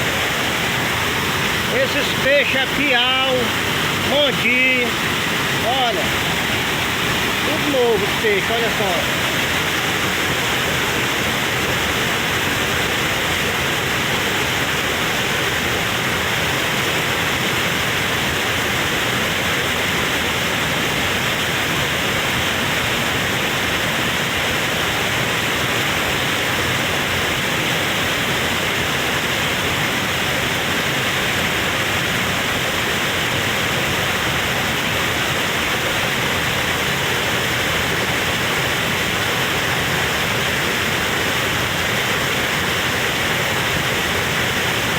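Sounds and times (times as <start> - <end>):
waterfall roaring: 0.0 - 44.9.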